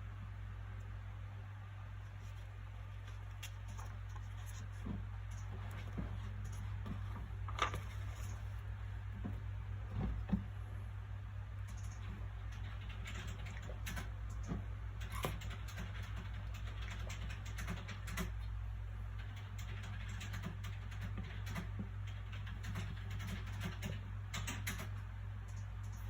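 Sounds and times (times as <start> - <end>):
low background hum: 0.0 - 26.0
book pages rustling: 2.1 - 8.6.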